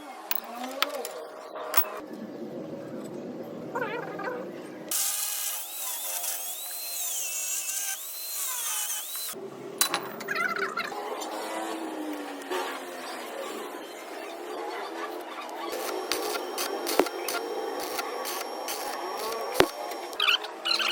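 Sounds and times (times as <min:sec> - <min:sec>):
workshop power tool noise: 0:04.9 - 0:20.9.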